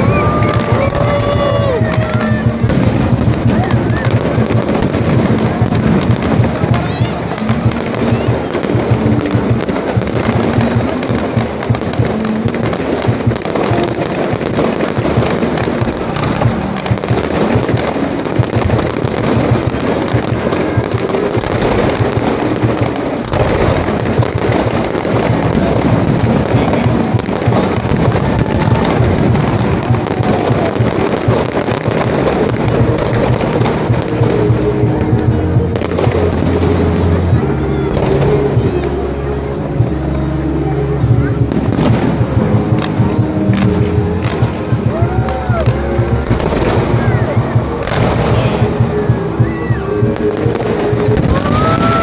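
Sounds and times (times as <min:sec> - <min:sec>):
firecrackers crackling: 0:00.0 - 0:52.0
music: 0:00.0 - 0:52.0.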